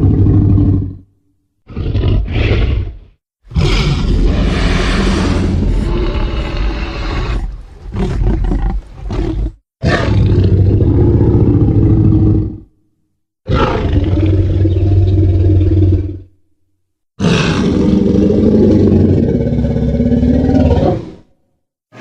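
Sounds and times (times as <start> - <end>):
monster roars: 1.7 - 7.5.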